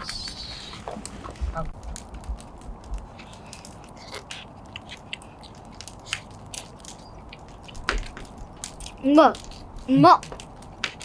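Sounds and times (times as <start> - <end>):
person eating crunchy food: 2.7 - 9.8.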